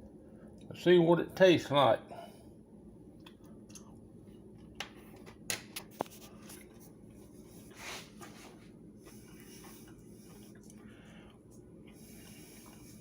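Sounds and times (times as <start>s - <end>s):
faint eating sounds: 2.0s - 5.3s, 6.2s - 13.0s
soft breath: 7.4s - 13.0s.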